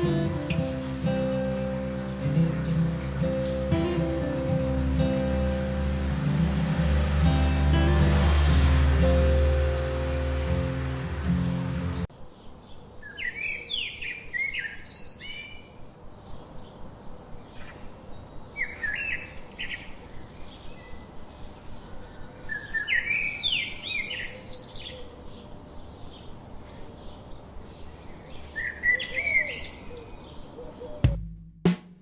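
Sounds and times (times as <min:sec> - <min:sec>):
background music: 0:00.0 - 0:12.0.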